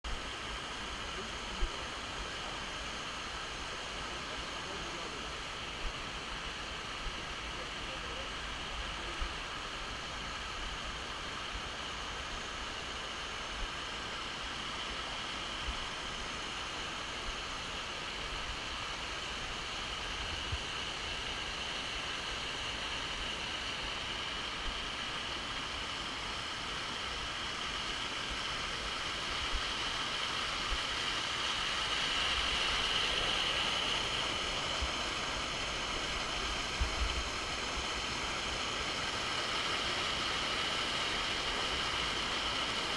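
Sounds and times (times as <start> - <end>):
waterfall rushing: 22.7 - 42.9.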